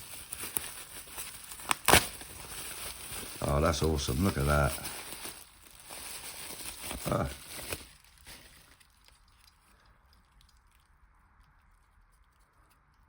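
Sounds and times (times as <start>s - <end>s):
packaging rustling: 0.0s - 9.4s.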